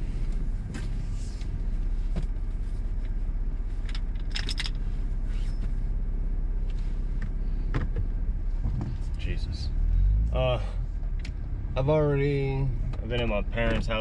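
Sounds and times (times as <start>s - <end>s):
car engine rumble inside cabin: 0.0s - 14.0s
metallic jingling and clicks: 3.9s - 4.8s.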